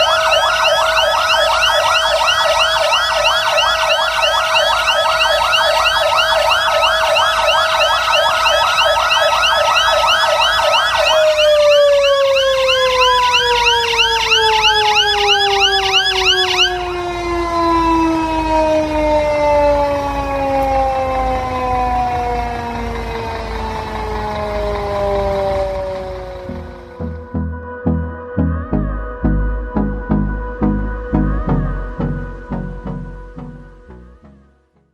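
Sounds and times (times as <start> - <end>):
fast yelping sirens: 0.0 - 27.2
wailing siren winding down: 0.0 - 34.6.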